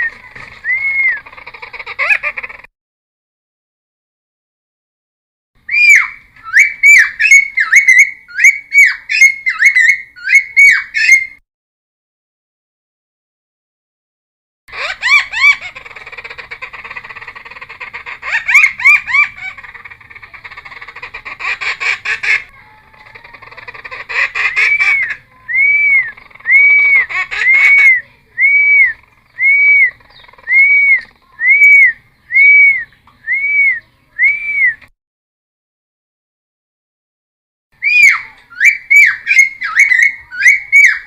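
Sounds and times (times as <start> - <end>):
bird singing whistled song: 0.0 - 1.2, 5.7 - 11.4, 24.5 - 34.9, 37.8 - 41.0.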